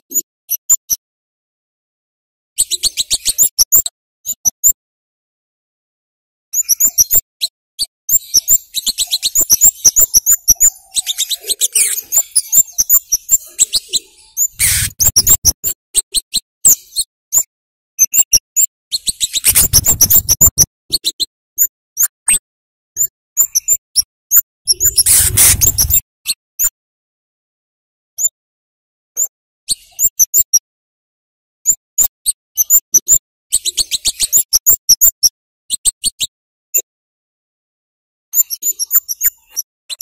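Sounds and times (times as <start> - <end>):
bird high chirps: 2.6 - 4.8, 6.6 - 17.5, 18.1 - 21.2, 23.0 - 26.0, 29.2 - 30.6, 31.6 - 35.2, 38.4 - 40.0.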